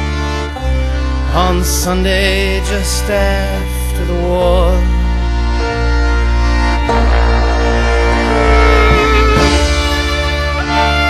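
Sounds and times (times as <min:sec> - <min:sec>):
steady bass line: 0:00.0 - 0:11.0
held instrument notes: 0:05.0 - 0:11.0.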